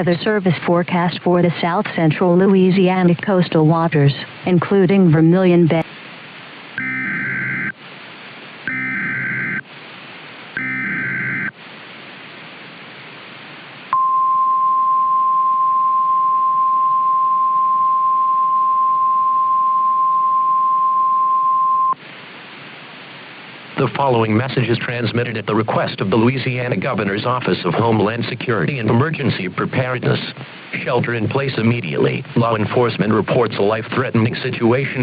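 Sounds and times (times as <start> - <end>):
digital data bursts: 8.7 - 9.6
radio hiss: 21.9 - 35.0.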